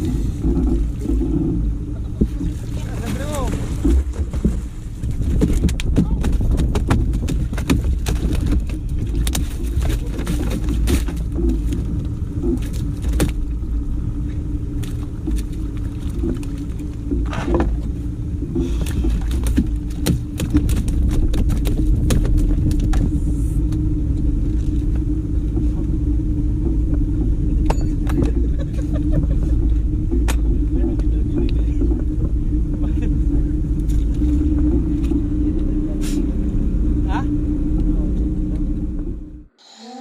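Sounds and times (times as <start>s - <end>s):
boat motor running: 0.0s - 40.0s
knocks and rattles: 3.1s - 13.4s.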